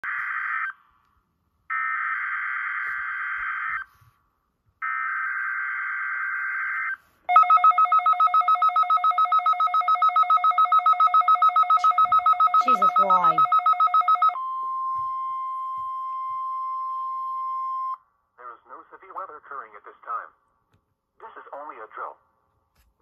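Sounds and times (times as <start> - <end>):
pulsing two-tone alert tone: 7.3 - 14.5.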